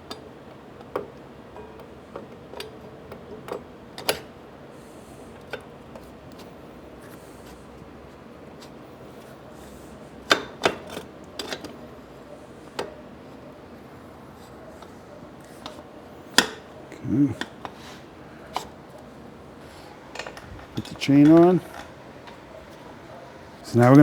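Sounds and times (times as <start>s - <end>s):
metal parts clicking and knocking: 20.0s - 22.5s.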